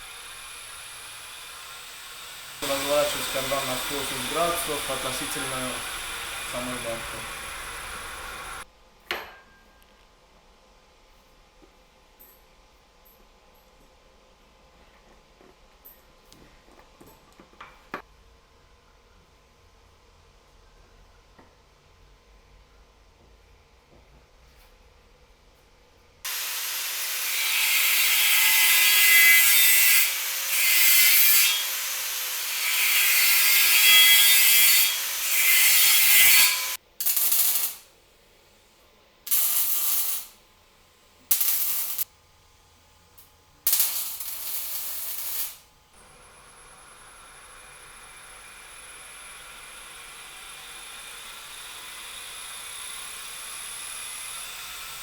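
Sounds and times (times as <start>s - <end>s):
harsh hissing tool noise: 0.0s - 8.7s, 26.3s - 37.9s, 39.3s - 40.5s, 41.2s - 42.1s, 43.7s - 55.0s.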